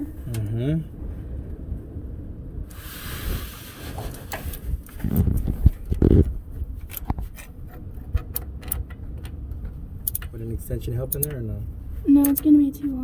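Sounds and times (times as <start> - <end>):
brief hiss: 2.7 - 4.7.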